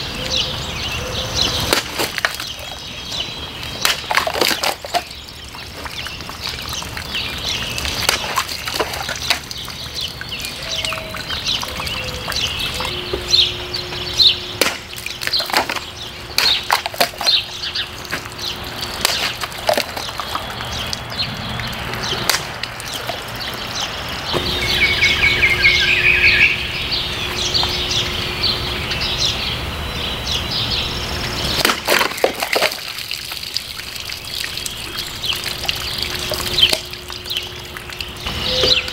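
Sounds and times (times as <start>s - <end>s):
birds chirping: 0.0s - 38.9s
knife slashing through bottles: 1.6s - 2.7s, 7.8s - 9.6s, 18.1s - 20.6s.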